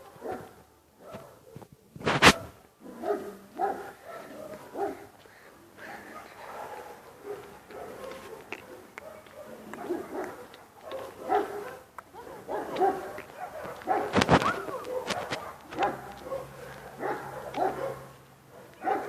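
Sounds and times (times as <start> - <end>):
dog barking: 0.0 - 5.2, 5.8 - 19.0.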